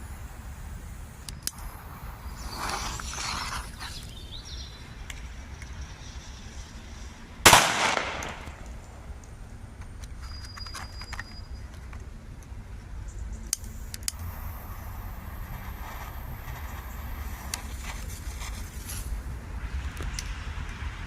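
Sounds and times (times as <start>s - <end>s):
firecracker bang with echo: 7.5s - 8.7s
faint sharp cracks: 7.5s - 9.4s.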